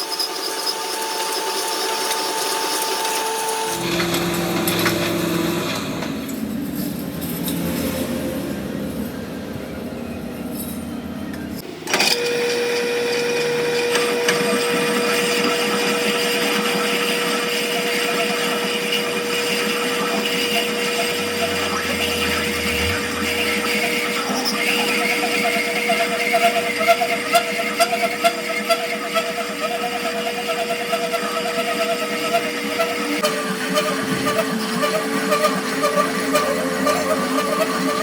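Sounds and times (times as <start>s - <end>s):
power tool humming and hissing: 11.7s - 38.0s
low mechanical sound: 18.9s - 28.7s.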